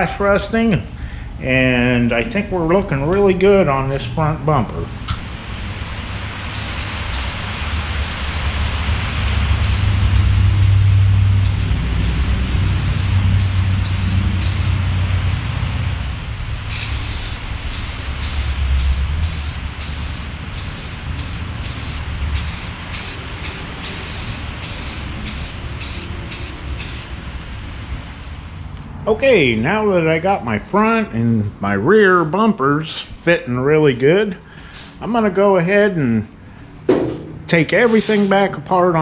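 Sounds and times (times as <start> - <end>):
low steady hum: 0.0 - 37.8
spray can hissing bursts: 6.1 - 15.0, 16.7 - 27.2, 37.8 - 38.4.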